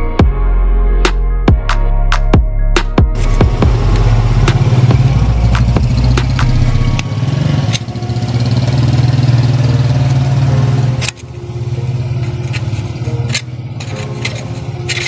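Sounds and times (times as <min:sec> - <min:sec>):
engine humming: 0:03.2 - 0:15.0.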